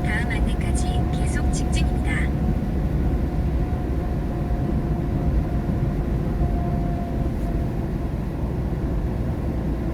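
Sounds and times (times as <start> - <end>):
road and engine rumble: 0.0 - 2.7.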